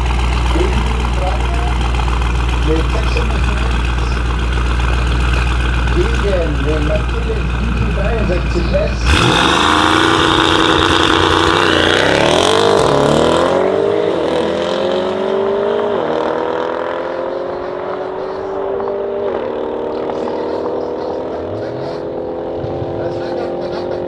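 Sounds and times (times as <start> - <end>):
loud rush: 0.0 - 15.1
car engine accelerating at full throttle: 0.0 - 24.0.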